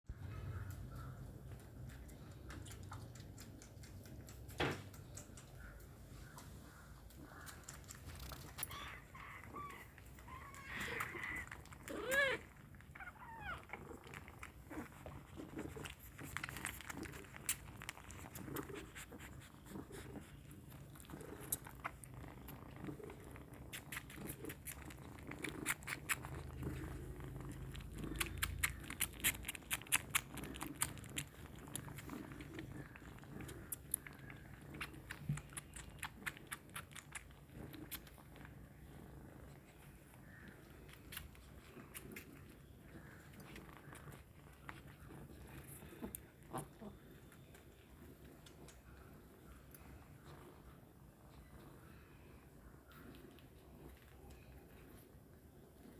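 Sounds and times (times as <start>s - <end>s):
kittens suckling wet clicks: 0.6s - 55.9s
kittens crying: 8.6s - 13.7s.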